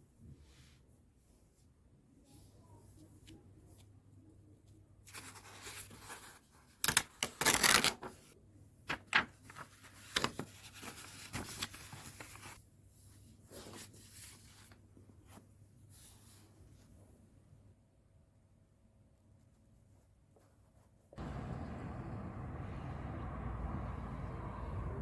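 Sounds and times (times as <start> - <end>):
rustling and handling noises: 0.1 - 17.4.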